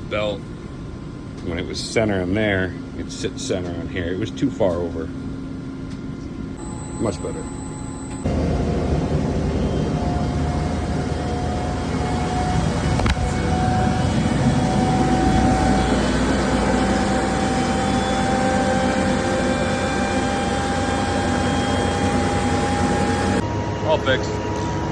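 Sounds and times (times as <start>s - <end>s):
washing machine motor humming: 6.6s - 24.1s.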